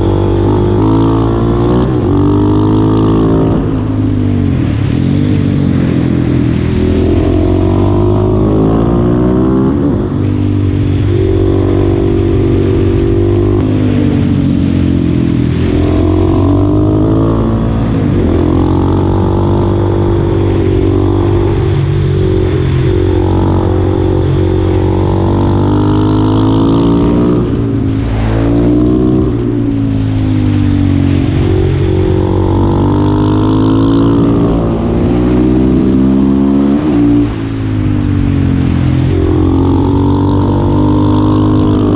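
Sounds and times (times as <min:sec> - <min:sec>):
motorcycle engine accelerating: 0:00.0 - 0:41.9.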